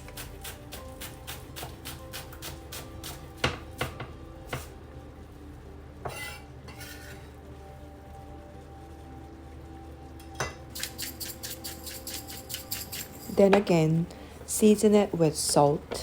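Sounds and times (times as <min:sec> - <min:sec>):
knife scraping cutting board: 0:06.1 - 0:07.3, 0:10.8 - 0:13.4.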